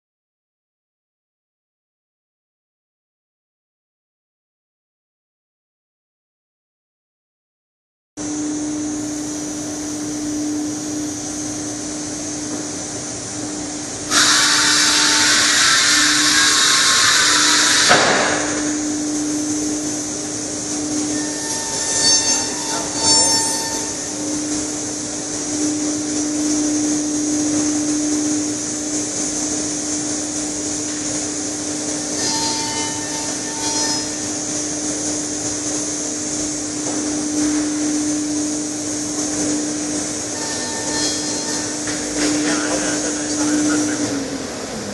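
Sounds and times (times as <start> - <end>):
machine humming: 8.2 - 44.9
lathe cutting wood: 14.1 - 18.8, 20.3 - 25.6, 31.9 - 35.6, 40.1 - 44.8
short high whines: 14.1 - 44.6.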